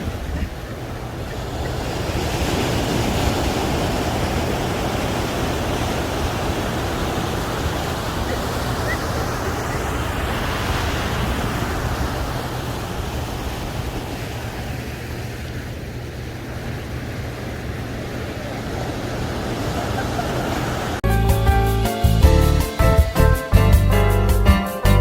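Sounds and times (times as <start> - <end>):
ocean surf washing ashore: 0.0 - 21.0
music: 21.0 - 25.0.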